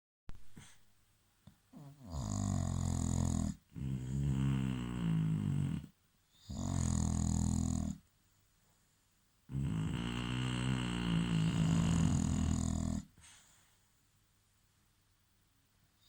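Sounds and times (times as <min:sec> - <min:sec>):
dog snoring: 0:01.7 - 0:08.0, 0:09.5 - 0:13.4.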